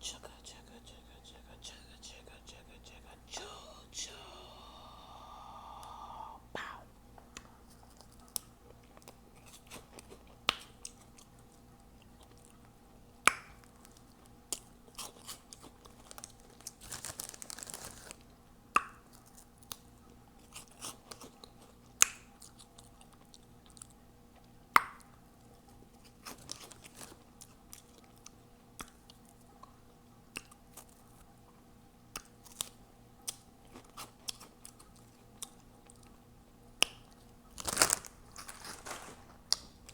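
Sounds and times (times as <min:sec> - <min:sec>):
quiet chewing: 0:05.6 - 0:39.9
lip smacks and clicks: 0:07.2 - 0:17.0, 0:20.6 - 0:31.0, 0:32.0 - 0:36.2, 0:36.8 - 0:38.0, 0:39.5 - 0:39.9.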